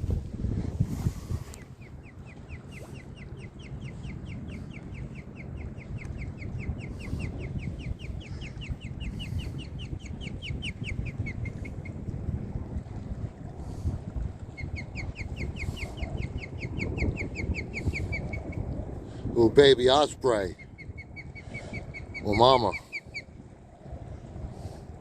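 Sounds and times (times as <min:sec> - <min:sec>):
low wind and water rumble: 0:00.0 - 0:25.0
osprey chirping: 0:01.6 - 0:12.0, 0:14.5 - 0:18.6, 0:20.6 - 0:23.3.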